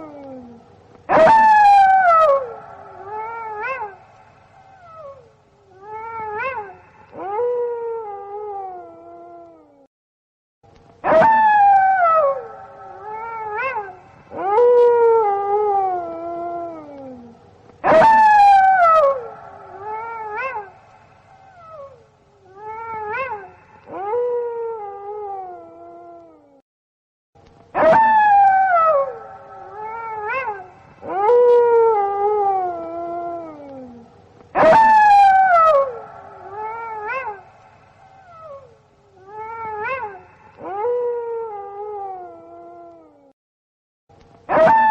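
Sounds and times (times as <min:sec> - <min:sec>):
wolves howling: 0:00.0 - 0:04.2, 0:11.0 - 0:20.9, 0:27.8 - 0:43.2, 0:44.5 - 0:44.9.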